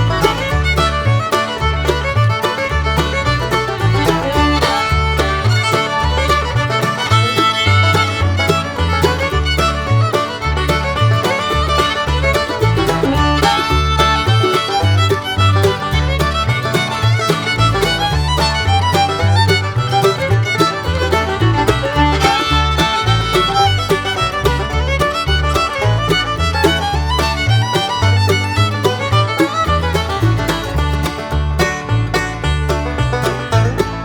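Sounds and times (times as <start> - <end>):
bluegrass music: 0.0 - 34.0.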